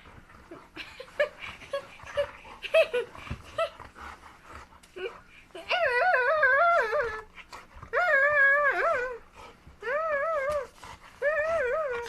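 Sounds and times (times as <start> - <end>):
dog whining: 5.0 - 12.0.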